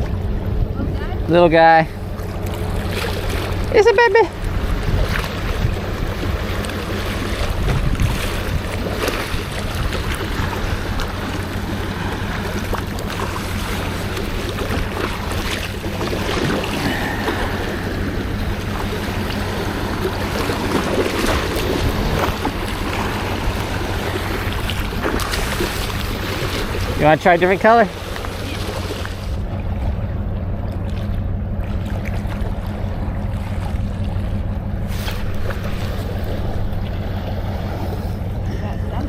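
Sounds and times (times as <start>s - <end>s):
low steady hum: 0.0s - 39.0s
water at shore: 0.0s - 39.0s
wind on microphone: 7.4s - 11.3s, 16.4s - 25.7s.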